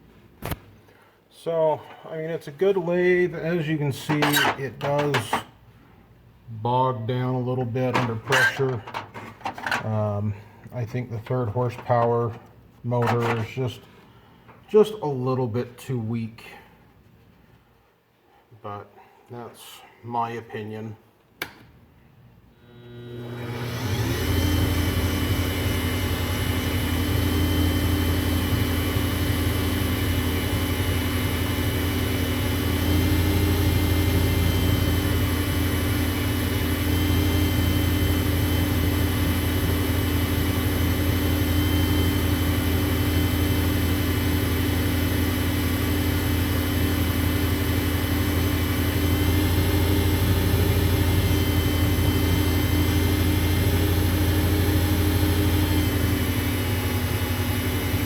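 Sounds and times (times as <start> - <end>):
lathe motor humming and whining: 22.8 - 58.0.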